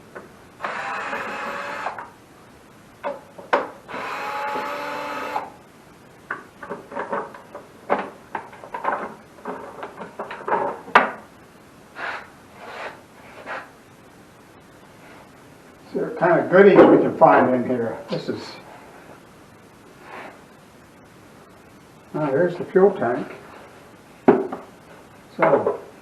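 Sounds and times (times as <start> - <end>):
cordless drill whirring: 0.6 - 2.0, 3.9 - 5.5.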